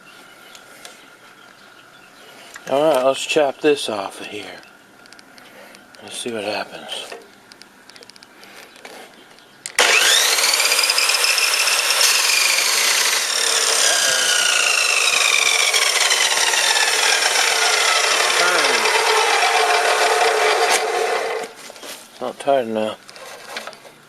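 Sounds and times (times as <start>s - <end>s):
chop saw motor whining: 9.8s - 21.6s
saw cutting metal: 9.8s - 21.6s.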